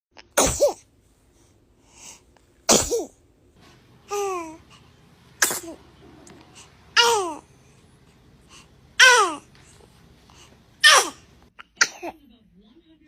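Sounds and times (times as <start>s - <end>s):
baby sneezing: 0.4s - 0.9s, 2.7s - 3.2s, 5.4s - 5.8s, 7.0s - 7.4s, 9.0s - 9.5s, 10.8s - 12.2s
high baby vocal sound: 7.0s - 7.5s, 9.0s - 9.5s, 10.8s - 12.1s.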